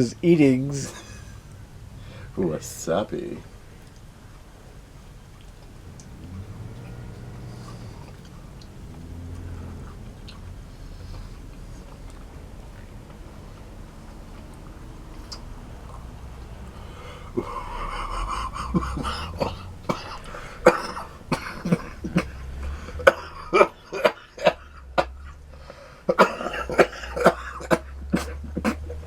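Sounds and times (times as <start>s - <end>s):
man clearing throat: 17.0s - 25.3s, 26.1s - 29.0s
man coughing: 17.0s - 25.3s, 26.1s - 29.0s.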